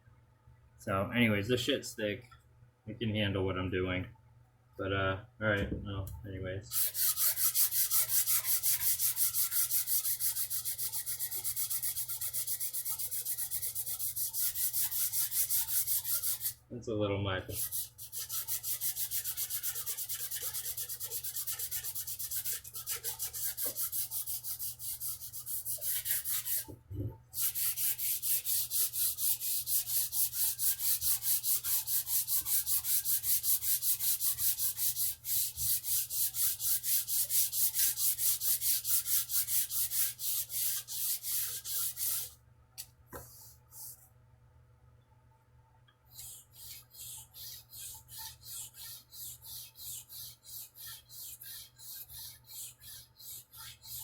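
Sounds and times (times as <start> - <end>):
sandpaper rubbing on wood: 6.7 - 16.6, 17.5 - 26.7, 27.4 - 42.3, 46.2 - 54.0.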